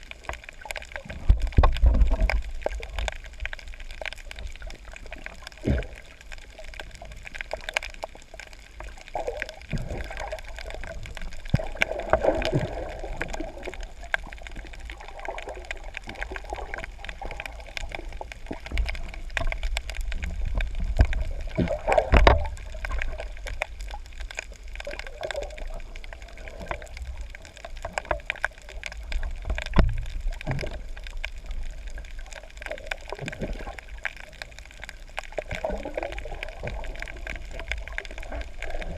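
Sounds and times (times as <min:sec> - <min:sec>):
water gurgling and sloshing: 0:00.0 - 0:38.9.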